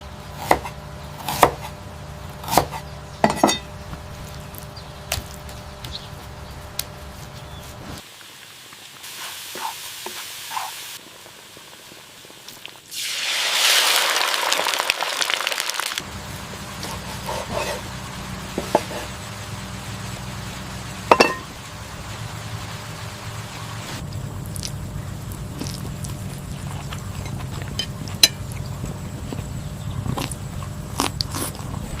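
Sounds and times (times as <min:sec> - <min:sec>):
utensils clinking against pots: 0:03.2 - 0:03.7, 0:21.1 - 0:21.5, 0:27.2 - 0:28.5
food sizzling in a hot pan: 0:08.0 - 0:24.0.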